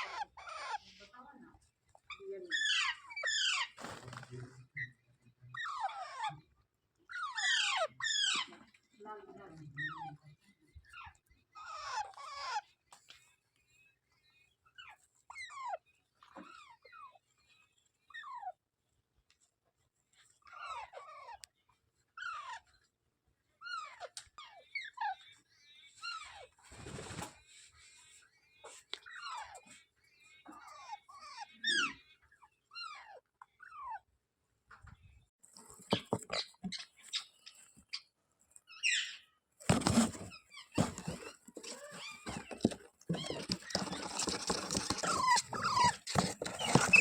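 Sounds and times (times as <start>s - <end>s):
parrot chirping and calling: 0.0s - 1.1s, 2.1s - 3.8s, 7.1s - 8.6s, 38.7s - 47.0s
noisy rasp: 39.7s - 47.0s.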